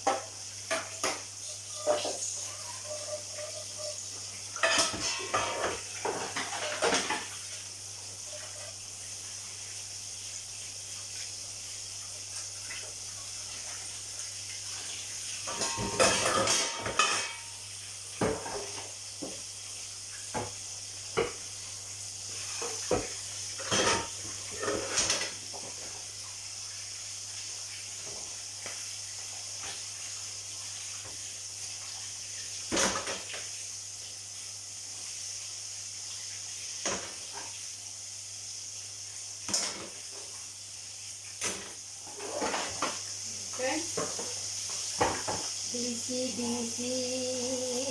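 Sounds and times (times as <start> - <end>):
food sizzling in hot oil: 0.0 - 47.9
dishes and cutlery clattering: 4.6 - 7.3, 15.4 - 17.6, 22.6 - 25.4.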